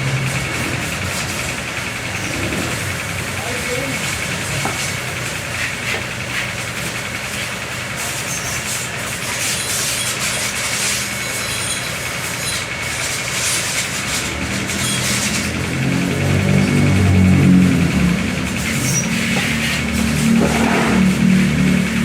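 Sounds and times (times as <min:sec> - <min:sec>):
engine running: 0:00.0 - 0:22.0
deep humming tone: 0:13.9 - 0:22.0.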